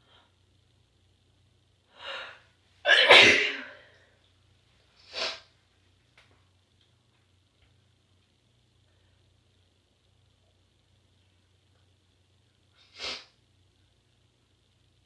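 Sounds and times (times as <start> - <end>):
woman sneezing: 2.9 - 3.9.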